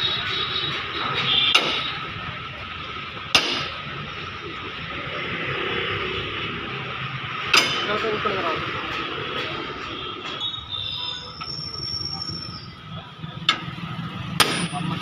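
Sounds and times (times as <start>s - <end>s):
hammer tapping sheet metal: 0.7s - 2.0s, 3.3s - 3.8s, 7.5s - 8.2s.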